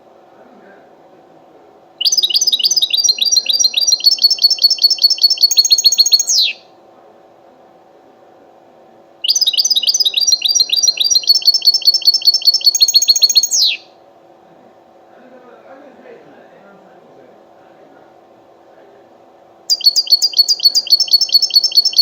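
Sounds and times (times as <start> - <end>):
goldfinch trilled song: 2.0 - 6.6, 9.3 - 13.8, 19.7 - 22.0.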